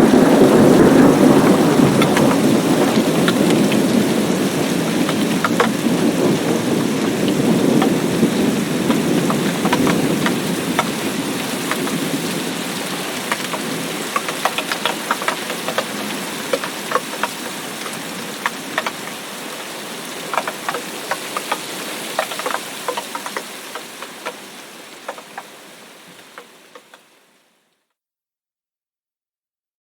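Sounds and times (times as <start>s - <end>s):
low thunder rumble: 0.0s - 14.0s
raindrops hitting a surface: 0.0s - 27.4s
steady rain: 0.0s - 27.8s.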